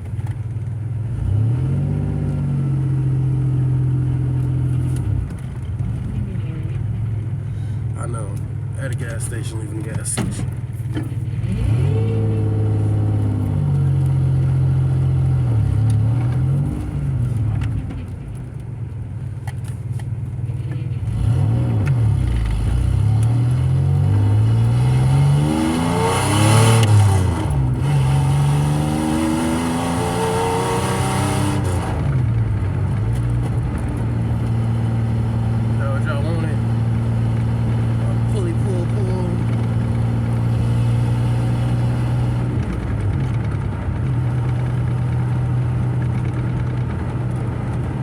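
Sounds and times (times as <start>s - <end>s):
car engine accelerating: 0.0s - 48.0s.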